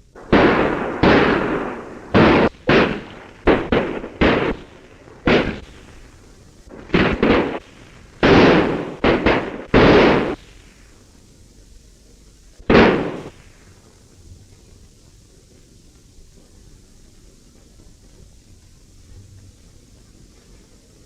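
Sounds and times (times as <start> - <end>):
gunshots with echo: 0.2 - 6.1, 6.7 - 10.6, 12.7 - 13.4.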